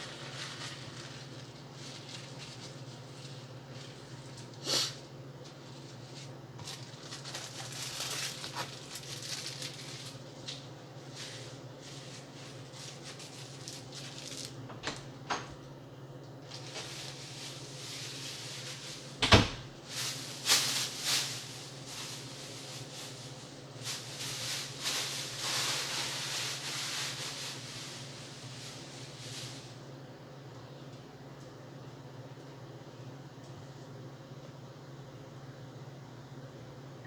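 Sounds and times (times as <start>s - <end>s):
rustling: 0.0s - 4.0s, 5.9s - 14.6s, 16.5s - 19.2s, 19.8s - 29.7s
steady low hum: 0.0s - 37.0s.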